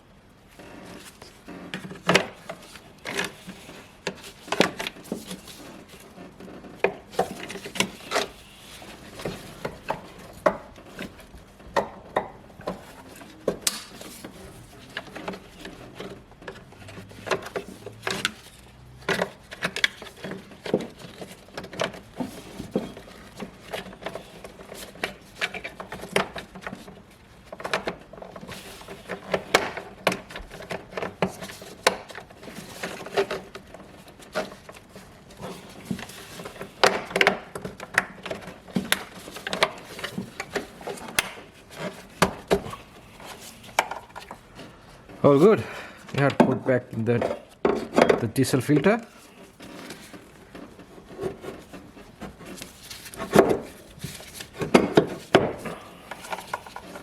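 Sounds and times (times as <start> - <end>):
tools and car parts clicking: 9.2 - 44.8.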